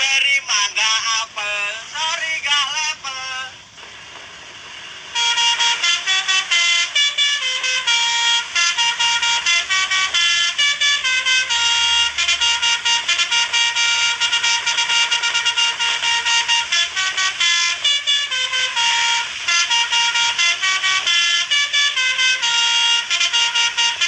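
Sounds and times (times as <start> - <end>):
multi-tone horn playing a tune: 5.0 - 24.0.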